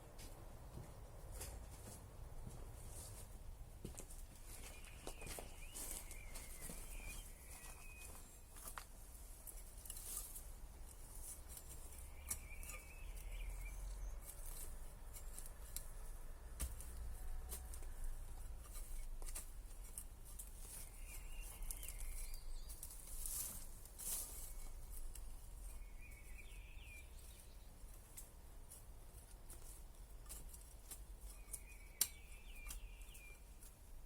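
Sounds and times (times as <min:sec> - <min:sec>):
bird chirping: 0:04.4 - 0:08.8, 0:11.1 - 0:16.1, 0:20.5 - 0:23.5, 0:24.3 - 0:28.0, 0:31.2 - 0:33.7.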